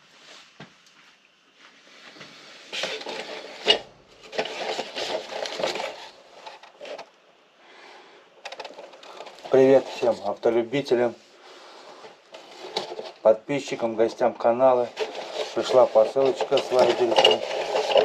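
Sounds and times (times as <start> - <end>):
rubbing and scraping: 2.4 - 7.1, 8.4 - 18.0.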